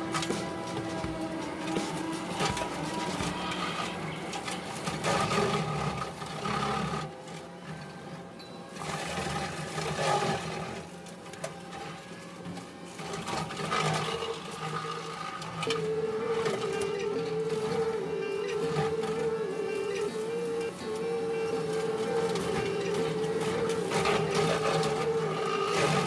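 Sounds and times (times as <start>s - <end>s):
diesel engine running: 0.0s - 6.2s, 14.3s - 26.0s
hydraulic brush cutter: 0.0s - 26.0s.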